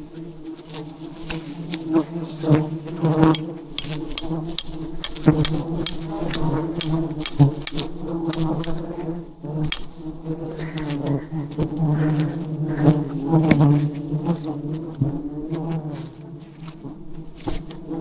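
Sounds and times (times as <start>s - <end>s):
bees buzzing: 0.0s - 18.0s
sharp clicks: 3.3s - 8.8s, 9.6s - 10.0s.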